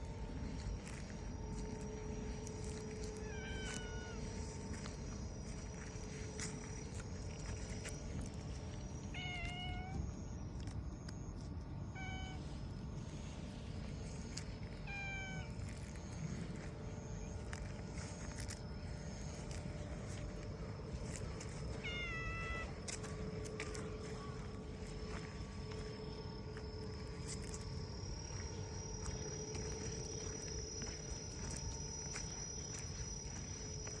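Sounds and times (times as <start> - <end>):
insects trilling: 0.0 - 34.0
low background rumble: 0.0 - 34.0
cat meowing: 3.2 - 4.2, 9.1 - 10.0, 11.9 - 12.5, 14.8 - 15.6, 21.8 - 22.7.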